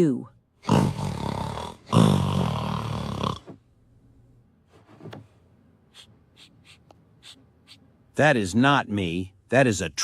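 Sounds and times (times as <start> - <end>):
person snoring: 0.6 - 3.6.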